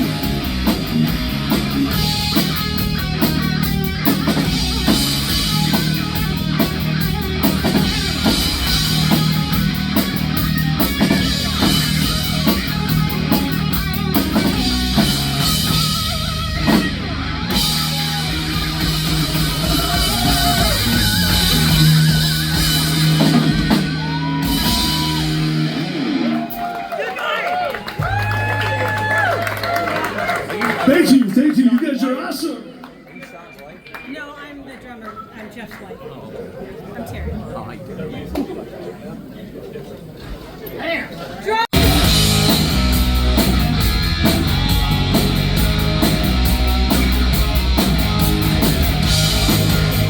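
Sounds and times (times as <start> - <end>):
bent lead guitar notes: 0.0 - 26.6, 41.8 - 50.0
distorted electric guitars: 0.0 - 26.6, 41.7 - 50.0
drum kit: 0.0 - 26.7, 27.9 - 30.0, 41.7 - 50.0.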